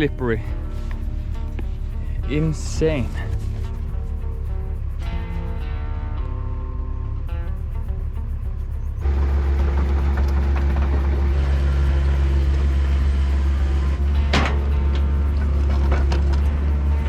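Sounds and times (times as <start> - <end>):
vehicle engine droning: 0.0 - 17.0.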